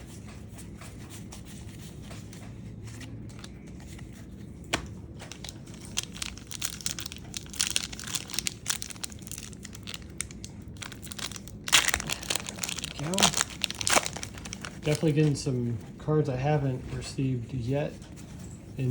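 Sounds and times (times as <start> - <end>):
card pack wrapper tearing: 5.3 - 15.4.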